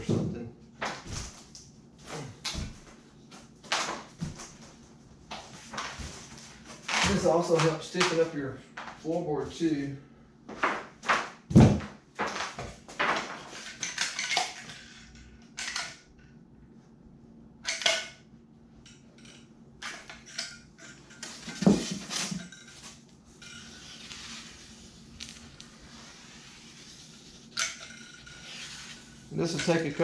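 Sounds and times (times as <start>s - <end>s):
tools knocking and clattering: 18.8s - 23.7s.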